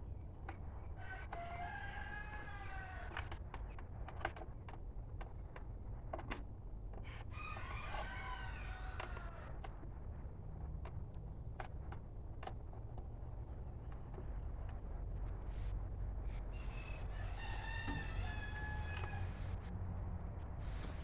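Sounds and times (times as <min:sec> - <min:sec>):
rooster crowing: 0:01.0 - 0:03.2, 0:07.1 - 0:09.5, 0:16.5 - 0:19.6.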